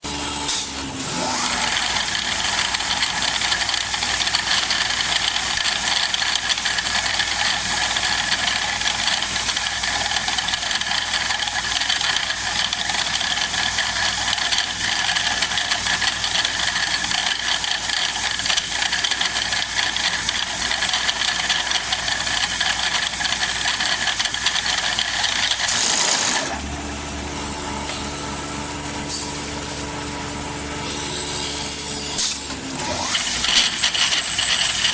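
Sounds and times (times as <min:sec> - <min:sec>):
motor hum: 0:00.0 - 0:34.9
woodworking machine rattling: 0:01.2 - 0:26.8, 0:33.0 - 0:34.9.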